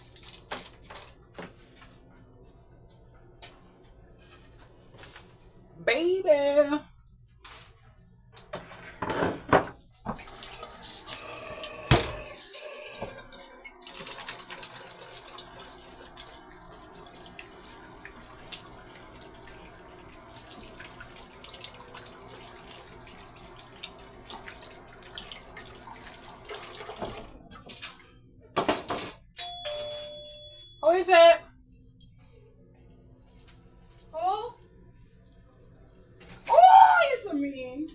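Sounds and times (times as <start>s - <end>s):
chicken deep-frying in hot oil: 10.5s - 27.1s.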